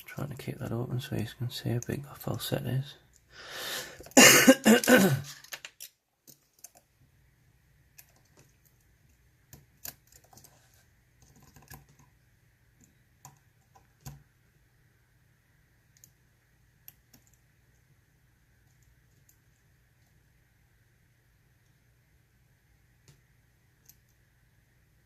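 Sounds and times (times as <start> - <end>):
low steady hum: 0.0 - 25.0.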